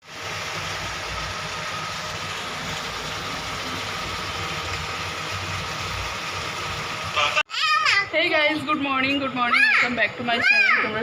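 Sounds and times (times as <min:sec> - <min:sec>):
mechanical hum and hiss: 0:00.1 - 0:07.4.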